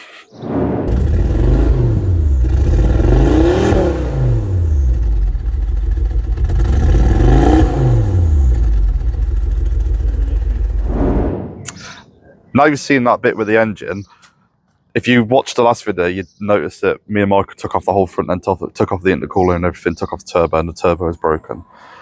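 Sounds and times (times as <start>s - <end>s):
car engine revving: 0.4s - 11.8s.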